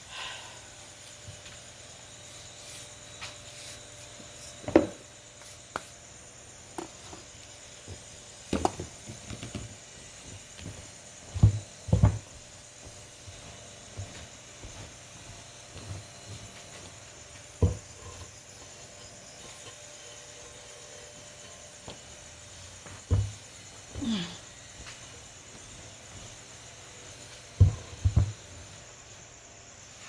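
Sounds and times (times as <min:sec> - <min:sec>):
faint steady hum: 0:00.0 - 0:30.0
kitchen things knocking and clattering: 0:04.7 - 0:05.0, 0:27.6 - 0:28.4.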